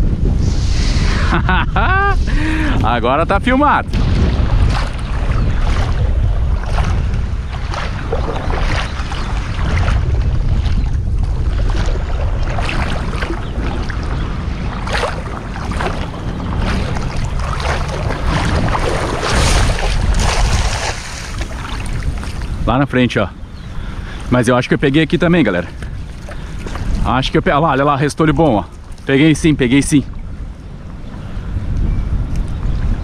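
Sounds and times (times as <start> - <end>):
sea surf: 0.0 - 31.4
wind buffeting microphone: 0.0 - 33.0.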